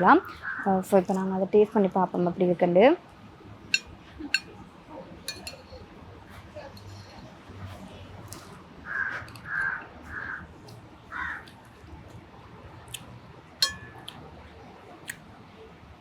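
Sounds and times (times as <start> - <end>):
sharp clink: 5.3 - 5.7, 13.6 - 14.1
crow cawing: 11.1 - 11.4.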